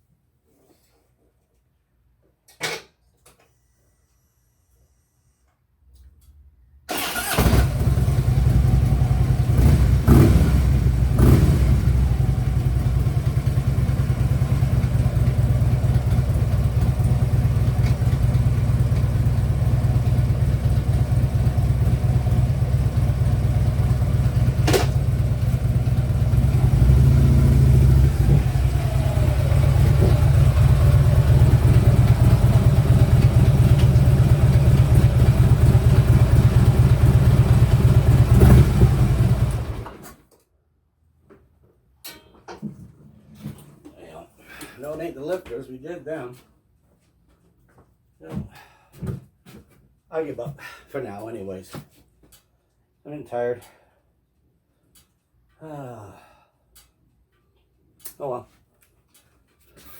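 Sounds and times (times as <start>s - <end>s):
engine rattle: 6.9s - 40.0s
motorcycle engine idling: 7.0s - 39.9s.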